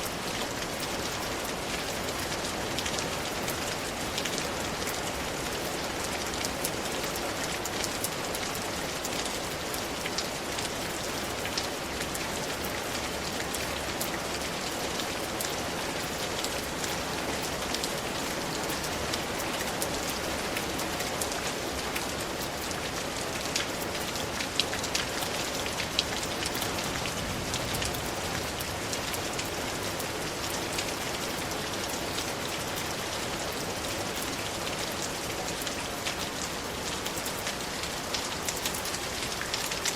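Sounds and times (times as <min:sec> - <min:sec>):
rain drops ticking on hard surface: 0:00.0 - 0:39.9
steady rain hiss: 0:00.0 - 0:39.9.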